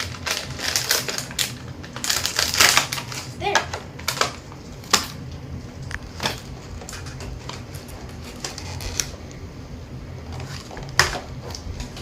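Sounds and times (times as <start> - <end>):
packaging clicks and rustles: 0.0 - 5.1.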